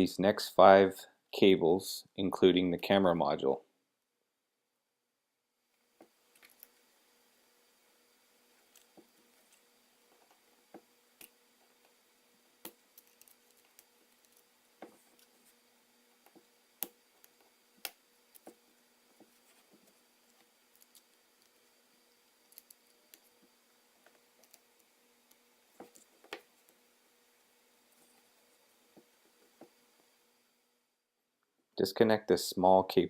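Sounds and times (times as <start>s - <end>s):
low steady hum: 0.0s - 33.0s.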